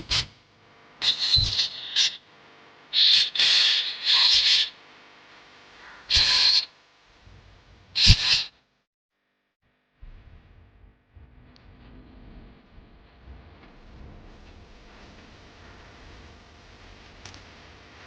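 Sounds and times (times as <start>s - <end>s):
short hissing spray bursts: 1.0s - 2.2s, 3.0s - 4.7s, 6.1s - 6.7s, 8.0s - 8.5s.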